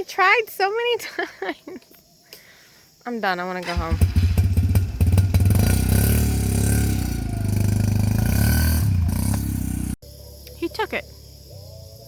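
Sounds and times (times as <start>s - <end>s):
off-road vehicle engine running: 3.6s - 10.0s.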